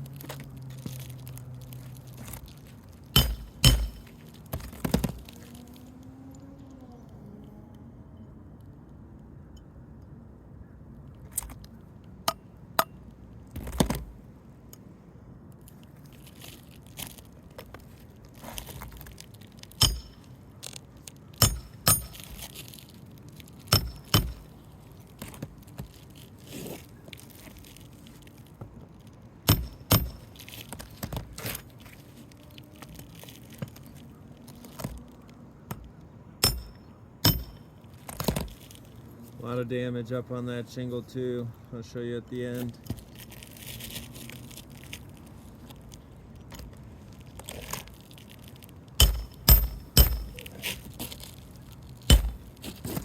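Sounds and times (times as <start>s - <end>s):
hammer striking metal tool: 3.2s - 4.2s, 19.8s - 20.3s, 21.4s - 22.2s, 23.7s - 24.4s, 29.5s - 30.2s, 36.4s - 37.7s, 49.0s - 50.5s, 52.1s - 52.5s.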